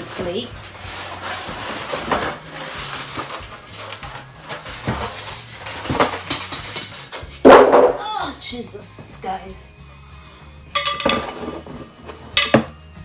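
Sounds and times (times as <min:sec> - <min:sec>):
packaging rustling: 0:00.0 - 0:07.4
glass plate knocks and clinks: 0:10.8 - 0:11.4.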